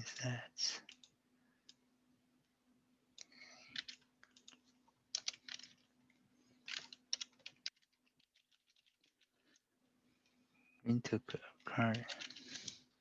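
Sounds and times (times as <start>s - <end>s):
faint low hum: 0.0s - 13.0s
typing on computer keyboard: 0.9s - 1.1s, 3.2s - 5.9s, 6.6s - 9.3s, 11.8s - 12.8s.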